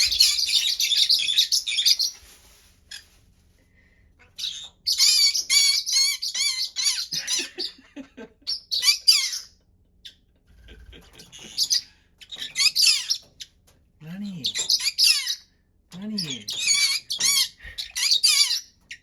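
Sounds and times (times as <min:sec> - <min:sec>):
parrot squawking: 0:00.0 - 0:02.1, 0:04.3 - 0:07.7, 0:08.5 - 0:09.5, 0:11.3 - 0:13.3, 0:14.1 - 0:15.5, 0:16.2 - 0:19.0.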